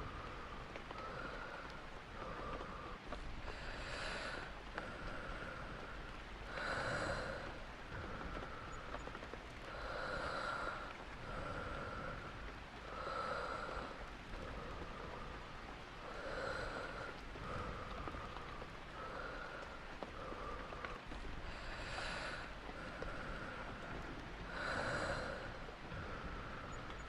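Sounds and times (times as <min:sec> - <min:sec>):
person breathing slowly: 0:00.0 - 0:27.0
rain pattering: 0:00.0 - 0:27.0.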